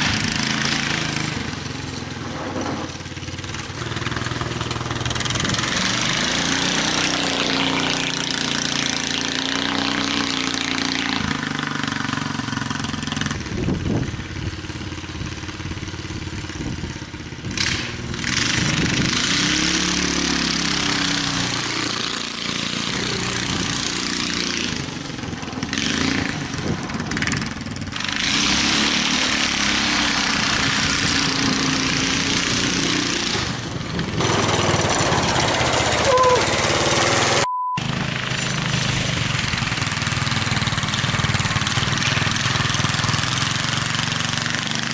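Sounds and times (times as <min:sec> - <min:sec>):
go-kart engine revving: 0:00.0 - 0:44.9.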